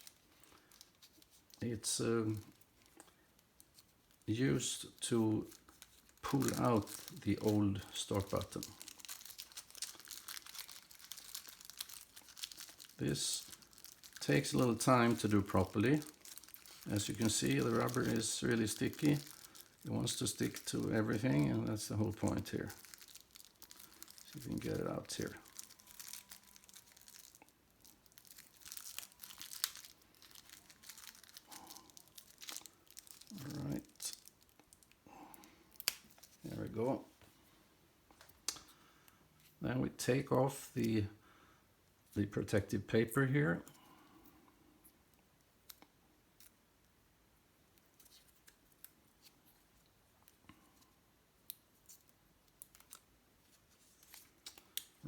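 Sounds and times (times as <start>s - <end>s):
packaging crinkling and tearing: 0.0s - 36.8s, 51.5s - 55.0s.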